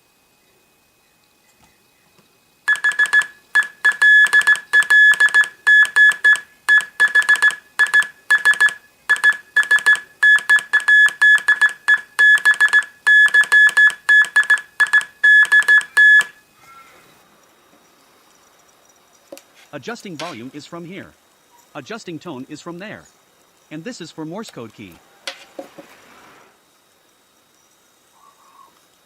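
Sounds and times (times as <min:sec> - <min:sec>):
morse code beeps: 0:02.7 - 0:16.4.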